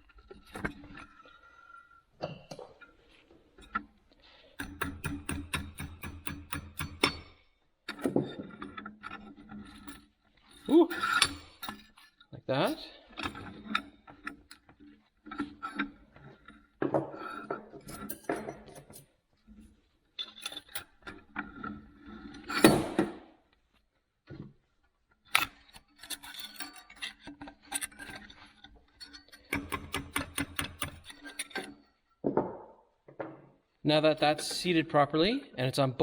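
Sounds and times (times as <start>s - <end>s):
steel parts clinking and knocking: 4.6s - 7.3s, 7.9s - 23.2s, 25.3s - 34.7s.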